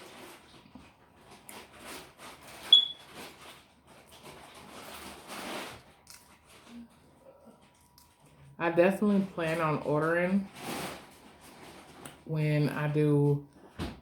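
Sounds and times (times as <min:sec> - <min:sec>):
sharp high squeak: 0:02.7 - 0:03.0.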